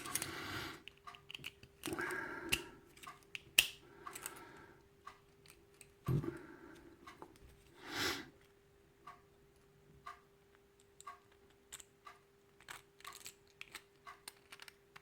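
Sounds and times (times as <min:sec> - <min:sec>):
metallic clicks of lock parts: 0:00.0 - 0:04.4, 0:10.8 - 0:15.0.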